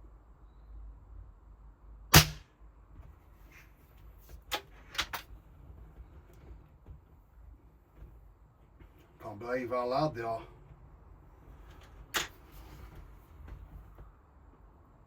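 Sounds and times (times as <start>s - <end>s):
air rifle shot: 2.1s - 2.5s.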